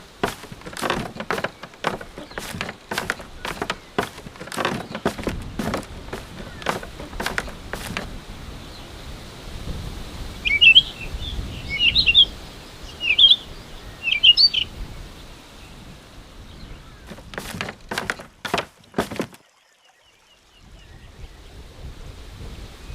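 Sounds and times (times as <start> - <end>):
footsteps: 0.0 - 8.1, 17.1 - 19.4.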